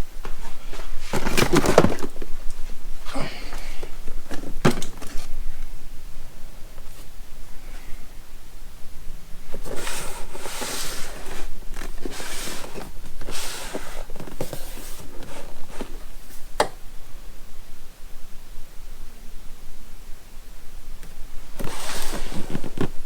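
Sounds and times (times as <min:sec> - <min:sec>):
rustling and scraping in cardboard box: 0:00.2 - 0:02.4, 0:03.1 - 0:05.4, 0:09.4 - 0:16.5, 0:21.5 - 0:23.0.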